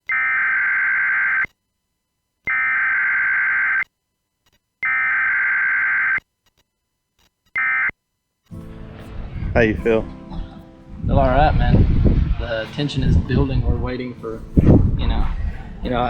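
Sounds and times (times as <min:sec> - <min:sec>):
warbling electronic data bursts: 0:02.5 - 0:03.8.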